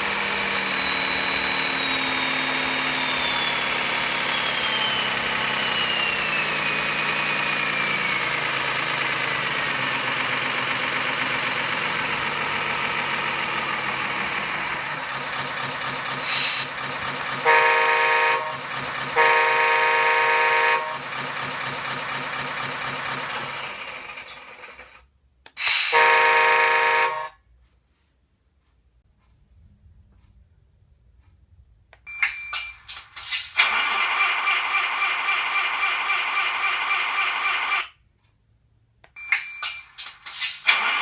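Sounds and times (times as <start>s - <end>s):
sampled diesel engine running: 0.0s - 27.4s, 29.1s - 38.4s, 39.0s - 41.0s
air horn blasts: 17.4s - 21.1s, 25.9s - 27.4s.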